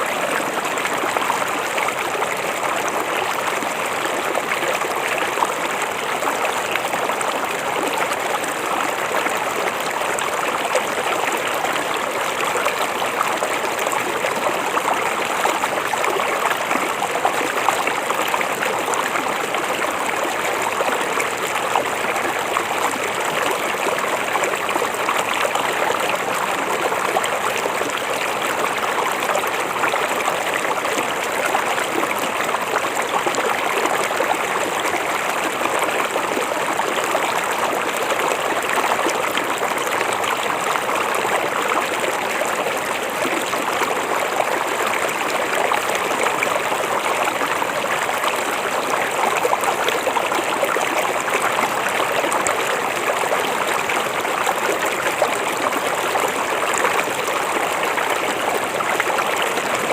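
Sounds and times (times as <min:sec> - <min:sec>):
river water flowing: 0:00.0 - 0:59.9.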